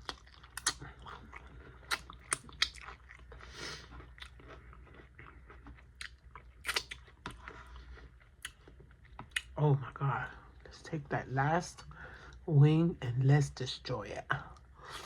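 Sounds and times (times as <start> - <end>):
chewing chicken wings: 0.0 - 9.6.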